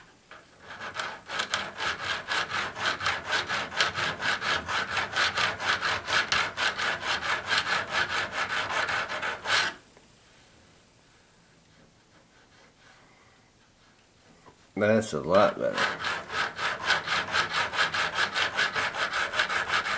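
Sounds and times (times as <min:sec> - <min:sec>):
hand file rasping on metal: 0:00.3 - 0:09.8, 0:15.3 - 0:19.9.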